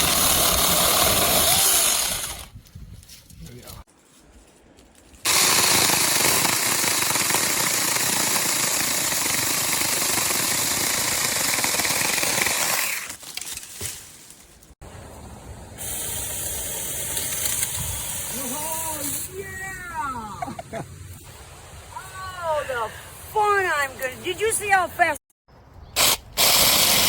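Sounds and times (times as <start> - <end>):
mini chainsaw cutting wood: 0.0 - 2.5, 5.3 - 13.2, 26.0 - 27.0.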